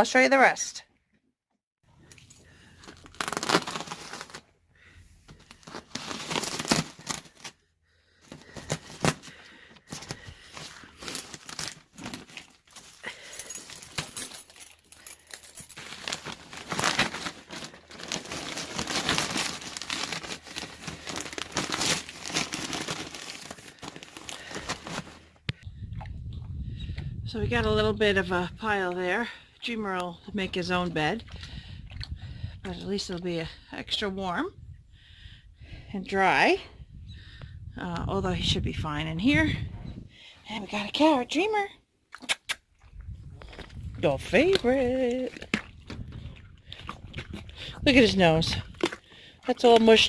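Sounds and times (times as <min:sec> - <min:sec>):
plastic bag crinkling: 0:02.6 - 0:04.5, 0:05.3 - 0:07.6, 0:08.3 - 0:25.4.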